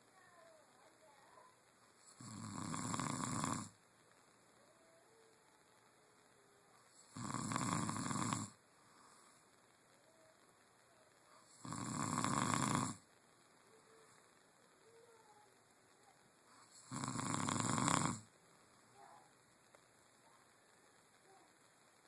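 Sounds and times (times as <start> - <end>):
person snoring: 2.1 - 3.7, 7.0 - 9.4, 11.4 - 13.0, 16.6 - 18.3.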